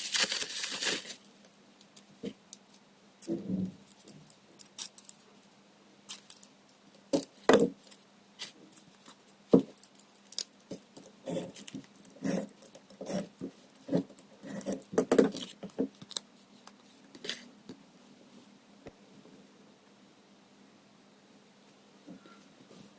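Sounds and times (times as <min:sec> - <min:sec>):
packaging rustling and clicking: 0:00.0 - 0:01.2
faint steady hum: 0:00.0 - 0:22.9.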